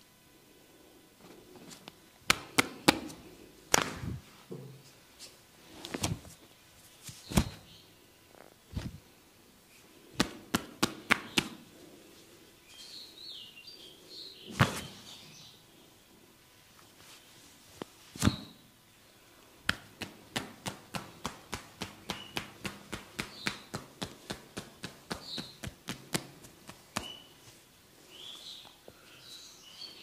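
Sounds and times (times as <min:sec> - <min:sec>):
massage smacks: 0:02.3 - 0:04.2, 0:07.1 - 0:07.6, 0:10.2 - 0:11.6, 0:14.5 - 0:15.0, 0:18.2 - 0:18.6, 0:19.6 - 0:27.3.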